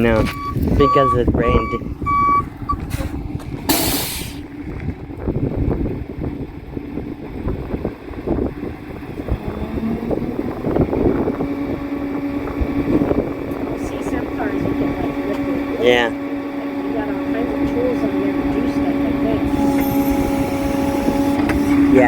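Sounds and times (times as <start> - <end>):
truck engine running: 0.0 - 22.0
wind buffeting microphone: 0.0 - 22.0
short loud hiss: 3.7 - 4.4
steady hum: 7.3 - 22.0.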